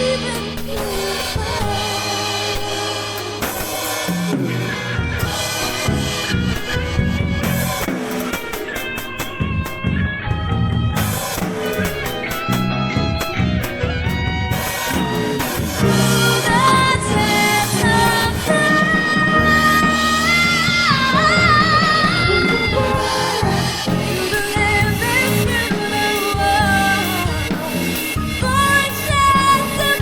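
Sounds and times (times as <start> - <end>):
cymbals: 0.0 - 9.8, 13.6 - 30.0
drum kit playing: 0.0 - 30.0
recorded pop song with guitar: 0.0 - 30.0.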